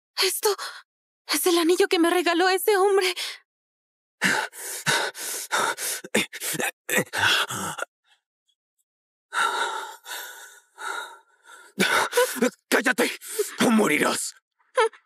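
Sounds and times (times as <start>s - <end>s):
person gasping and breathing hard: 4.2s - 7.9s, 9.4s - 12.5s.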